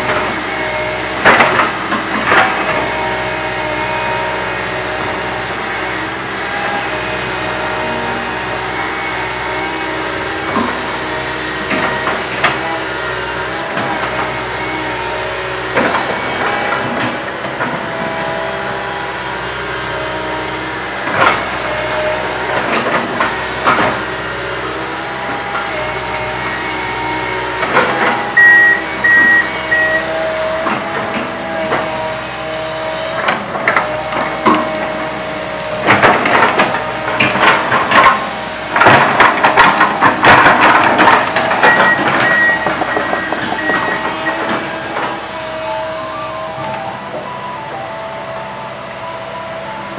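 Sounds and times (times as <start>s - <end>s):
excavator engine and hydraulics: 0.0s - 49.9s
hydraulic whine: 0.0s - 49.9s
high beeps: 28.4s - 30.1s.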